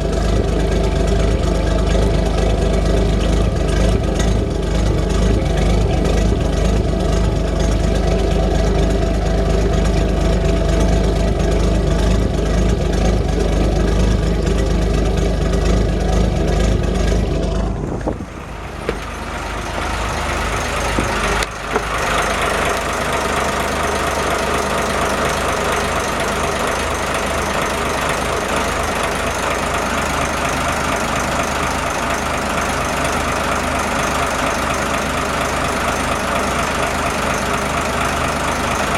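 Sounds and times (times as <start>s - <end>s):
boat engine running: 0.0s - 38.9s.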